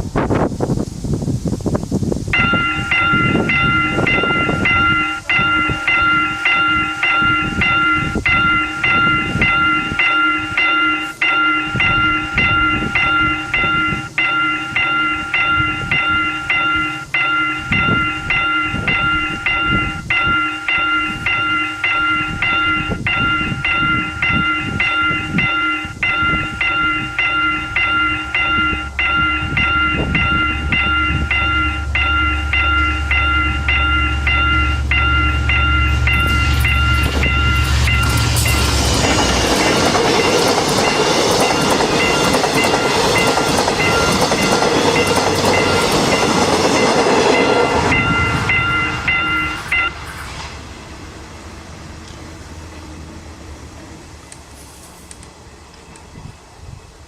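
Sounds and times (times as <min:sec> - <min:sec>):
level crossing bell ringing: 0:02.4 - 0:50.0
low rumble: 0:22.1 - 0:41.4.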